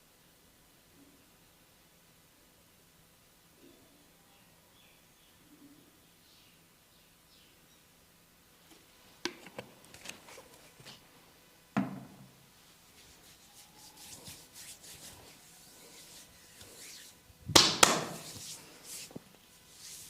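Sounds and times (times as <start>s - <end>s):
hands rubbing over skin: 12.6s - 20.0s
sharp pats on skin: 13.0s - 20.0s.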